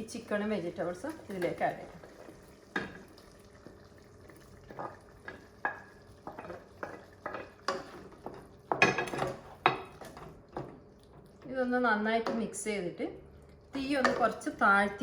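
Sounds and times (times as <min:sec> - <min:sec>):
sauce frying: 0:00.0 - 0:12.1
spoon scraping and knocking in pan: 0:04.7 - 0:10.8.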